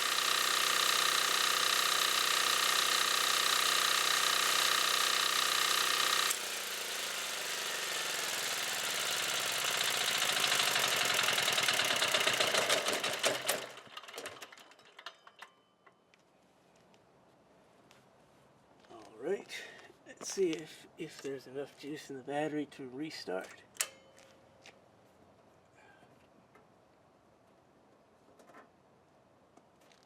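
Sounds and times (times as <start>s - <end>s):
diesel generator running down: 0.0s - 14.8s
engine clicks: 5.9s - 15.6s.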